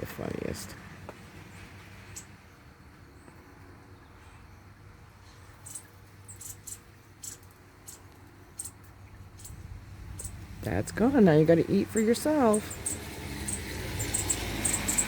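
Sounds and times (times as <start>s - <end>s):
young bird cheeping: 5.6s - 8.0s, 10.2s - 10.4s, 12.4s - 15.0s.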